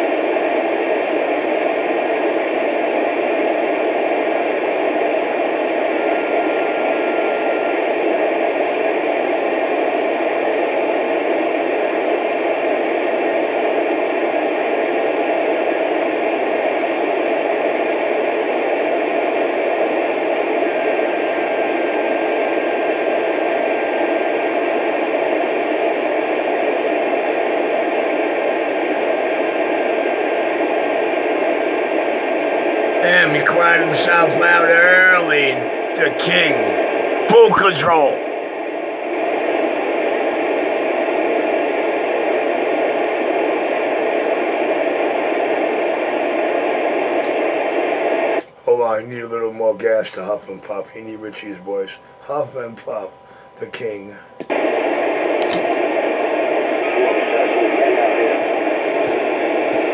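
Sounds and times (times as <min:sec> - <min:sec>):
radio static hissing: 0:28.6 - 0:38.2, 0:54.5 - 0:59.9.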